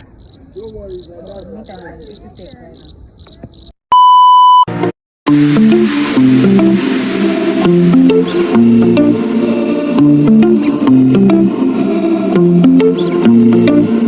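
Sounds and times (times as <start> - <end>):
short high beeps: 3.9 - 4.7
loud electronic bleep: 3.9 - 10.2
guitar music: 5.3 - 14.0.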